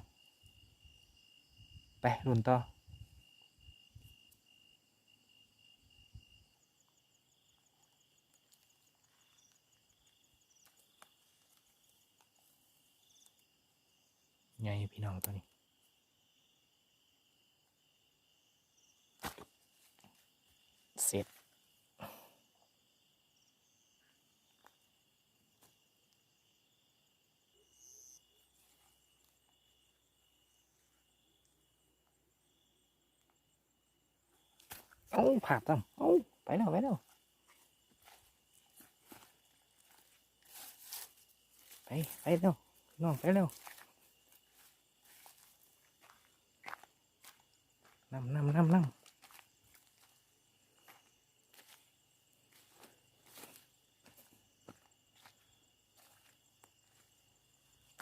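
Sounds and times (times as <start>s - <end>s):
crickets trilling: 0.0s - 58.0s
high buzzing insect call: 2.8s - 21.9s, 22.6s - 58.0s.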